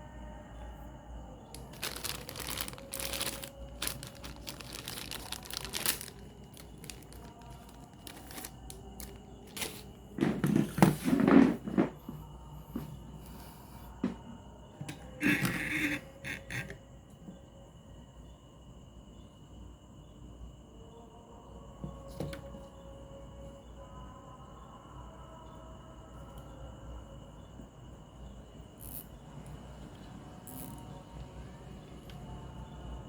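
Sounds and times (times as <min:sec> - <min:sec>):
hands and tools handling things: 0:01.5 - 0:11.3.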